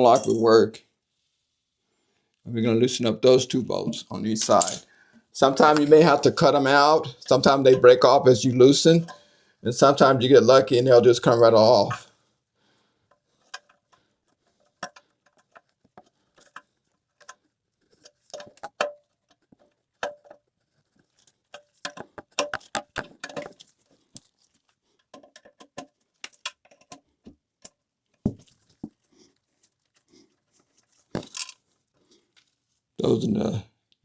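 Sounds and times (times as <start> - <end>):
wrench clinking on nuts and bolts: 0.0 - 0.6, 4.4 - 4.9.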